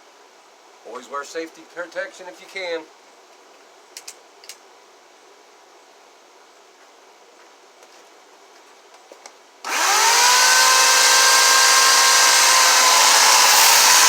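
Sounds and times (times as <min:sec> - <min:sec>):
electric power tool whining: 0:09.7 - 0:14.0.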